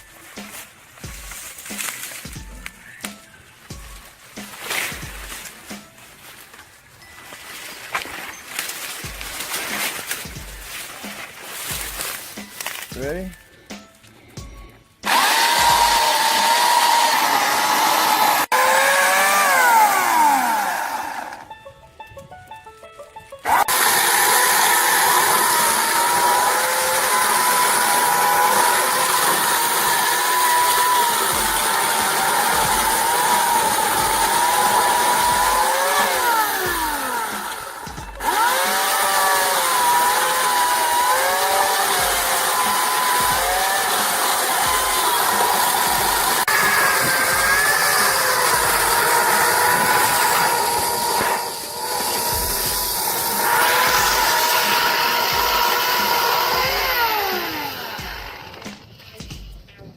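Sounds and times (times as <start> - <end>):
electric chainsaw motor whine: 15.0 - 21.5, 23.4 - 58.8.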